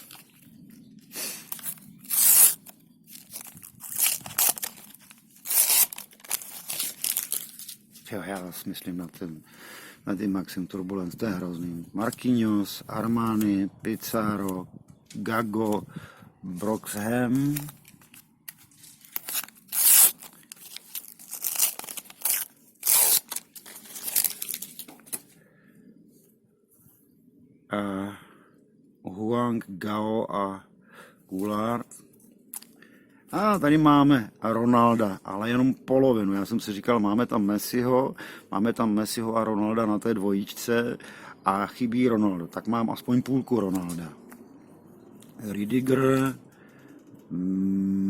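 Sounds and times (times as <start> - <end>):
wrapper crinkling: 0.0 - 0.5, 1.5 - 8.2, 16.7 - 25.3
paper packets ripping: 1.5 - 8.1, 16.6 - 25.3.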